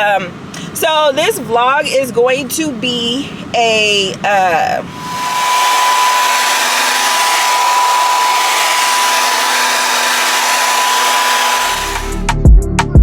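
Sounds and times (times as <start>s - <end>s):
hair dryer running: 4.9s - 12.4s.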